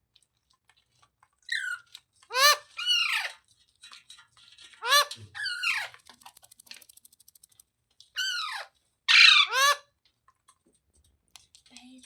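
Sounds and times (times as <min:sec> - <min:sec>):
parakeet screeching: 0:01.5 - 0:03.4, 0:04.8 - 0:06.0, 0:08.2 - 0:09.8
faint rapid clicking: 0:05.8 - 0:08.2, 0:10.0 - 0:12.0.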